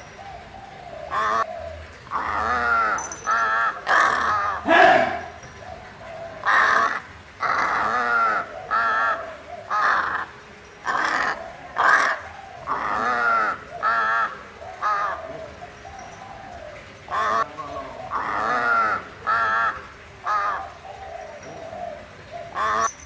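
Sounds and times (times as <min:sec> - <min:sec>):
crow cawing: 0:04.7 - 0:05.4.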